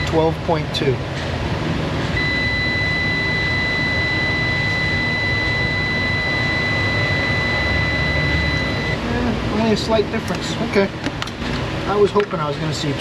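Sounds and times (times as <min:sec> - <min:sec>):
multimeter continuity beep: 0:00.0 - 0:00.2, 0:02.2 - 0:09.0.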